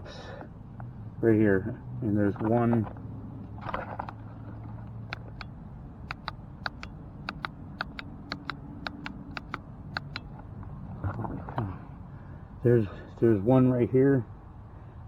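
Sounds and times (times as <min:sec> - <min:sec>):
steady low hum: 0:00.0 - 0:15.0
light clicks and taps on trim: 0:06.1 - 0:11.2.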